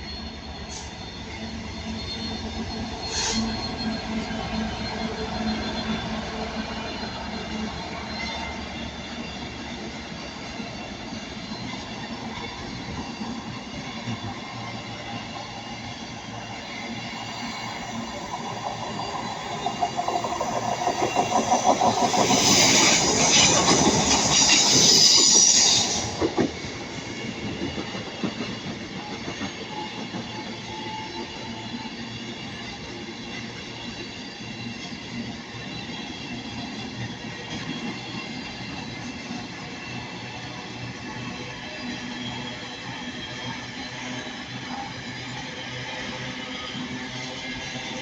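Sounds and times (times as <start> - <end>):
low train rumble: 0.0 - 48.0
wheel-on-rail hiss: 16.9 - 27.0
train wheels clattering: 18.2 - 30.7.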